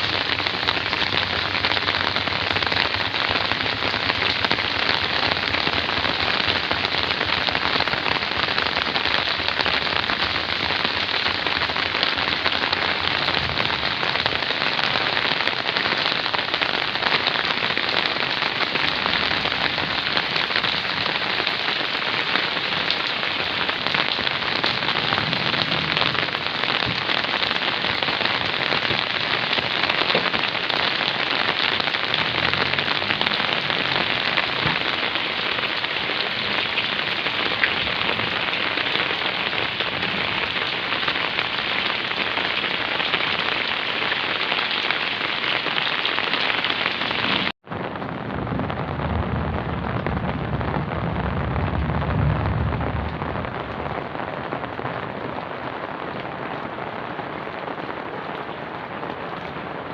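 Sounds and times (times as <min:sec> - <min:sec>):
heavy rain downpour: 0:00.0 - 0:59.9.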